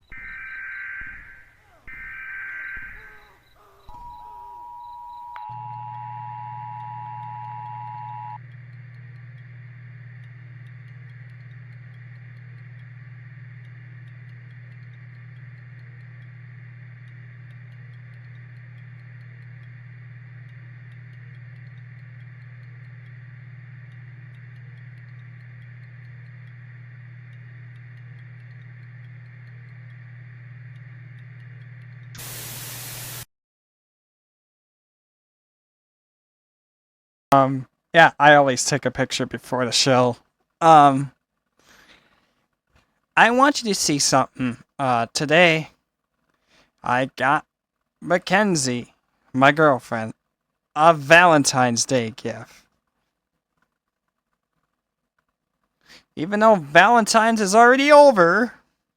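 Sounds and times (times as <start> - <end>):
two-tone alert signal: 0.0 - 8.4
steady low hum: 0.0 - 33.2
faint regular ticking: 1.0 - 33.1
loud burst of static hiss: 32.1 - 33.3.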